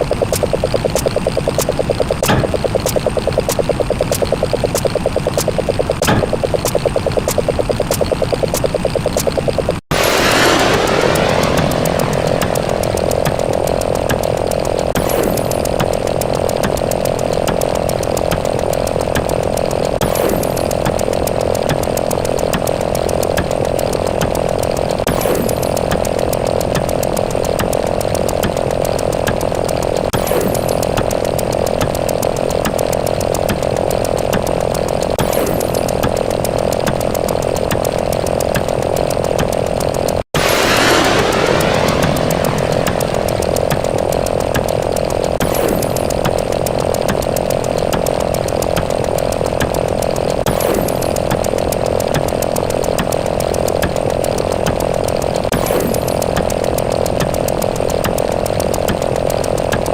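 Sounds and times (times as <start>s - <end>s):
buzzing drone: 0.0s - 16.2s, 40.4s - 46.6s
rapid counter clicks: 0.0s - 59.9s
rapid ticks: 0.0s - 59.9s.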